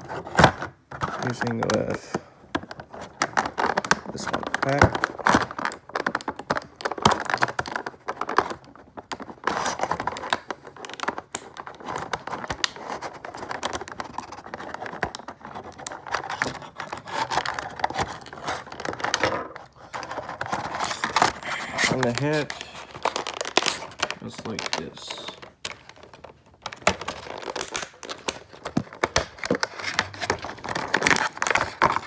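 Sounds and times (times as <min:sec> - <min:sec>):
plastic packaging crackling: 0:01.1 - 0:32.0.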